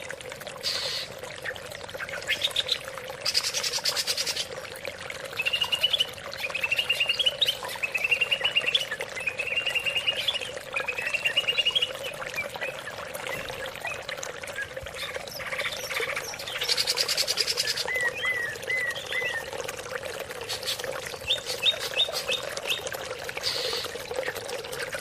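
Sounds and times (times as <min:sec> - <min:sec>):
bird singing trilled phrases: 0:00.7 - 0:04.5, 0:05.4 - 0:19.6, 0:20.4 - 0:24.4.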